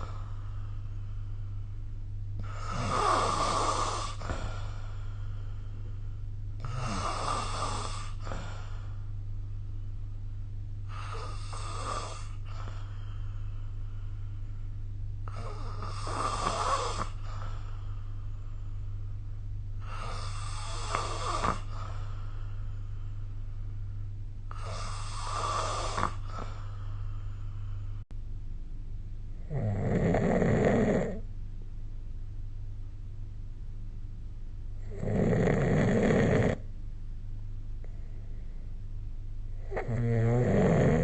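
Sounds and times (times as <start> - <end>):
steady low hum: 0.0 - 41.0
person snoring: 2.4 - 5.3, 6.6 - 9.0, 10.9 - 13.1, 15.2 - 18.0, 19.8 - 22.4, 24.5 - 27.2, 29.4 - 31.3, 34.8 - 36.6, 39.5 - 41.0.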